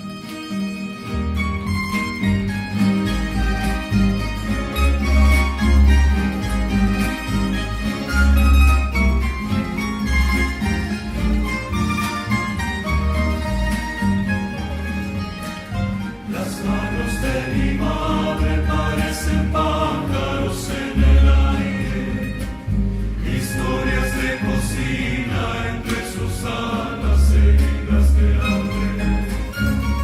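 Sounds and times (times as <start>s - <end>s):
bass line: 1.4s - 30.0s
choir singing with instruments: 16.2s - 30.0s.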